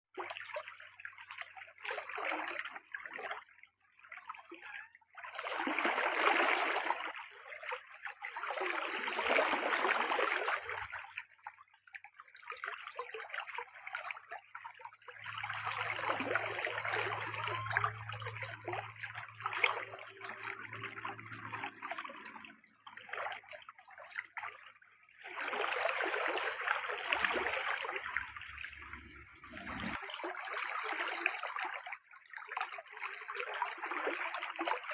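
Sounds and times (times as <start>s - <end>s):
water running and splashing: 15.0s - 31.9s.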